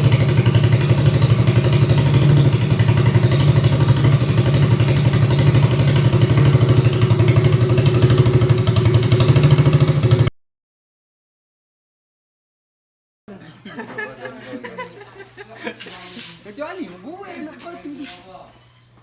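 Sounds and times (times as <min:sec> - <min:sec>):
engine with fast exhaust beat: 0:00.0 - 0:10.3.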